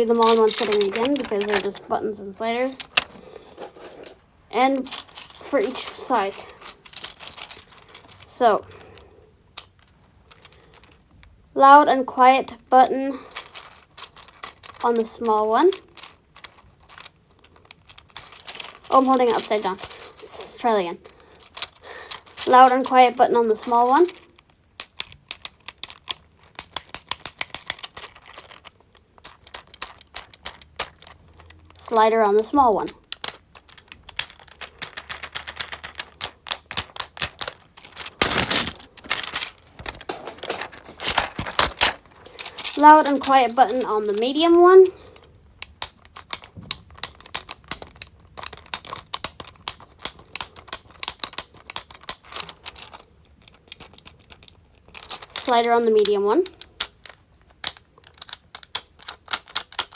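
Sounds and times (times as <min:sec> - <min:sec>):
plastic fidget buttons clicking: 0:45.6 - 0:52.4.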